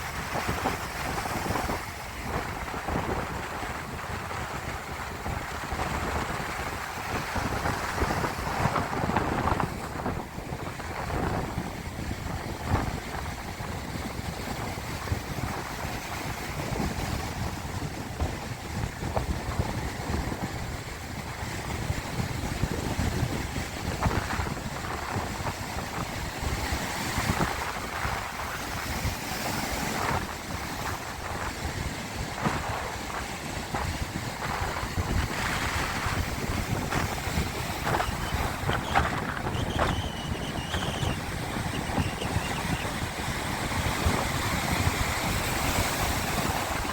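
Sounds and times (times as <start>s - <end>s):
wind buffeting microphone: 0.0s - 46.9s
sea waves washing: 23.4s - 46.9s.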